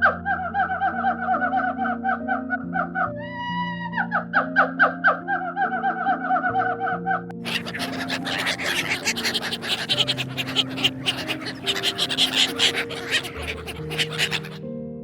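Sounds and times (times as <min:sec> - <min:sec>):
soft background music: 0:00.0 - 0:15.0
animal scratchy clicking: 0:07.4 - 0:14.6.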